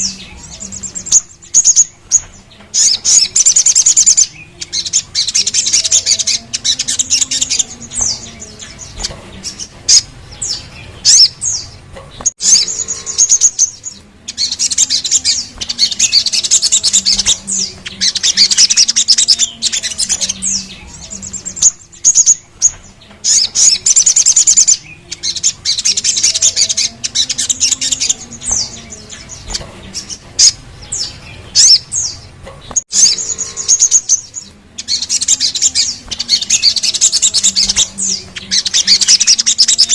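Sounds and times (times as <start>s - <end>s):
bird trilled song: 0.0s - 39.9s.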